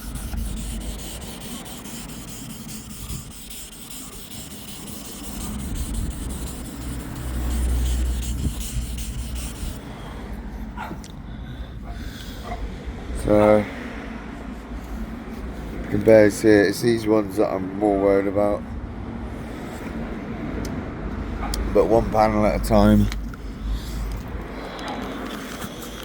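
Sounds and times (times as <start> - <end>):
wet sanding rasping rub: 0.0 - 9.8.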